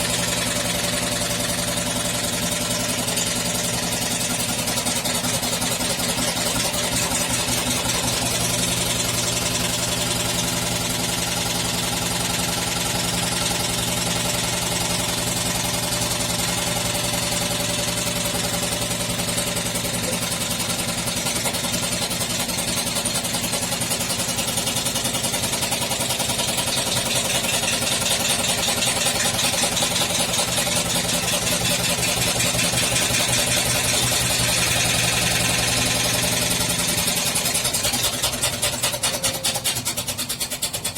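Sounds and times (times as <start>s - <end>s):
washing machine drum humming: 0.0s - 24.1s, 24.8s - 40.9s
fast knocking and rattling: 0.0s - 40.9s.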